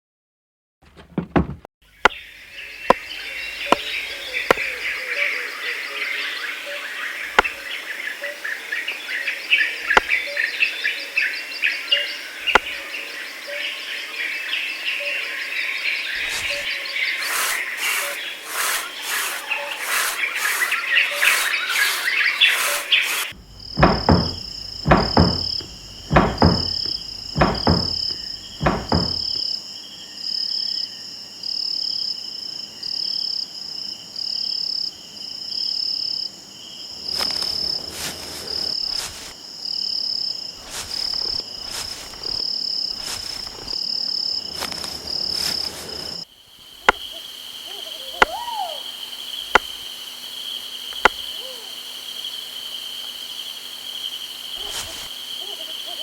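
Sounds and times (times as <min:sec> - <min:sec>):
insects chirping: 0:01.8 - 0:56.0
high insect trill: 0:01.9 - 0:56.0
sharp knocks: 0:23.3 - 0:29.4.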